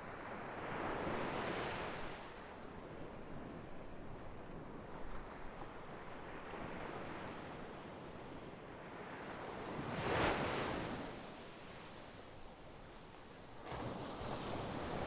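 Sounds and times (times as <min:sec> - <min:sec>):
ocean surf on a shore: 0:09.8 - 0:11.9.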